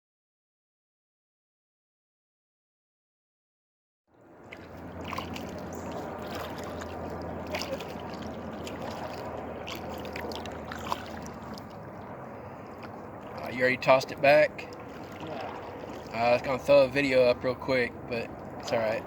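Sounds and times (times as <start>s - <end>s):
low steady hum: 4.1s - 19.0s
water lapping around kayak: 4.2s - 19.0s.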